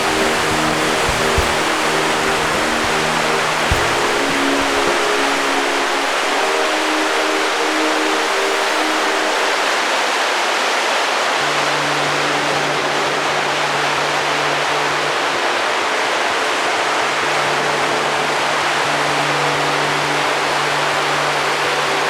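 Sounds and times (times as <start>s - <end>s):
faint held music notes: 0.0s - 10.3s
rushing flowing water: 0.0s - 22.0s.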